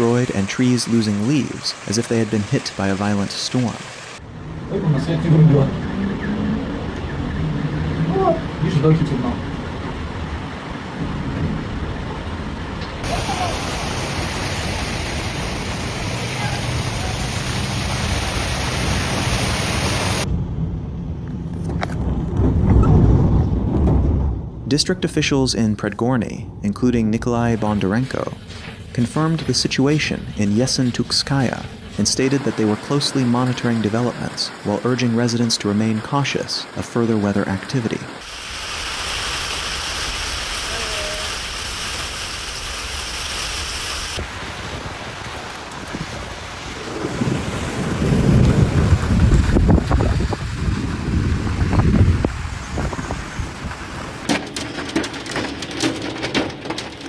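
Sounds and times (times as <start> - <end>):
heavy hailstorm hiss: 0.0 - 4.3, 13.0 - 20.3, 27.9 - 57.0
heavy rain falling: 0.0 - 20.3, 27.8 - 57.0
wind rumble on microphone: 4.2 - 13.6, 15.4 - 32.0, 44.2 - 54.3.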